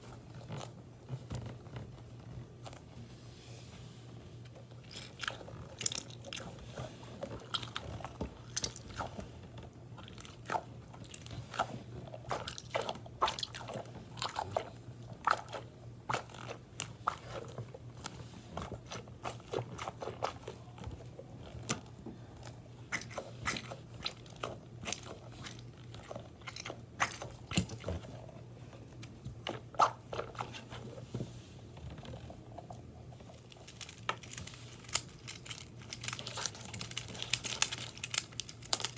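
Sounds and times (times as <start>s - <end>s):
fidget toys crackling and clicking: 33.4s - 38.9s.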